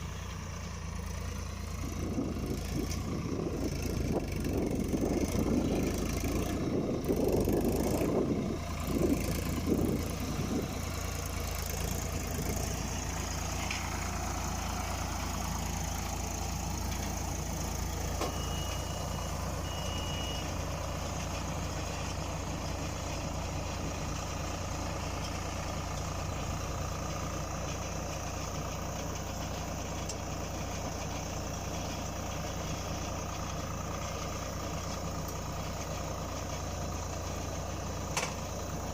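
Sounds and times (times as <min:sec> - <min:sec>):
tractor diesel engine running: 0:00.0 - 0:38.9
short high beeps: 0:18.2 - 0:20.5.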